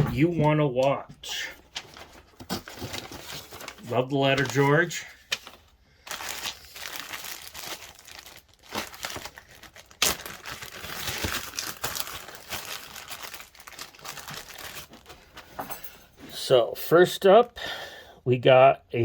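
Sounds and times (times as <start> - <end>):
packing material crinkling: 1.7 - 15.6.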